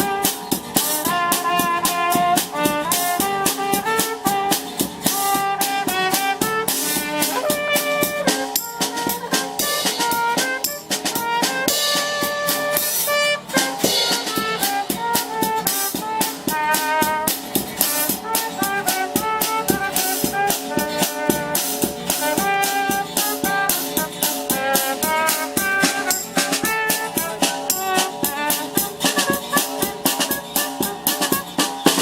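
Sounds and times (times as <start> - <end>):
music with fast drum beat: 0.0 - 32.0.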